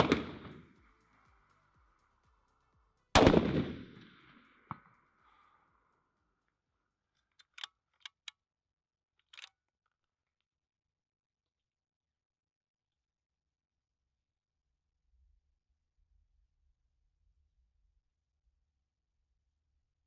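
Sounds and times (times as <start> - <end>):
bullet striking steel target: 0.0 - 0.6, 3.2 - 4.0
rifle shot: 0.0 - 0.7, 3.2 - 4.8
rifle bolt metallic clicks: 7.4 - 8.4, 9.2 - 9.6.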